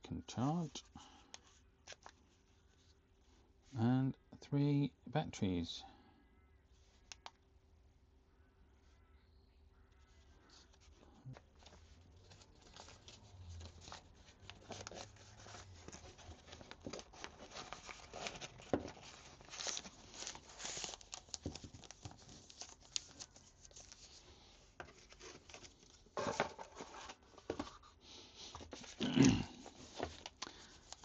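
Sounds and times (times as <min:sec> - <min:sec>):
packaging rustling and tearing: 0:10.6 - 0:27.8, 0:28.6 - 0:31.0.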